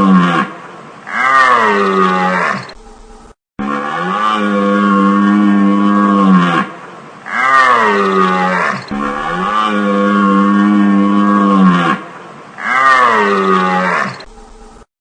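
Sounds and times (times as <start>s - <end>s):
deer moaning calls: 8.9s - 11.2s.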